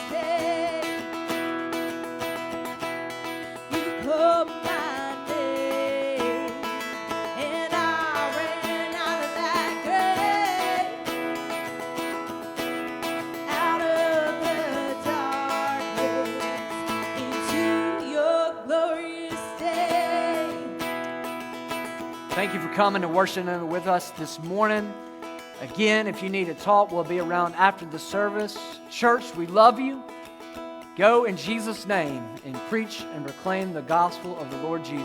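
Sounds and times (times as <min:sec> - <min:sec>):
person singing worship song: 0:00.0 - 0:01.2, 0:03.7 - 0:11.2, 0:13.5 - 0:20.9
strummed acoustic guitar: 0:00.0 - 0:35.0.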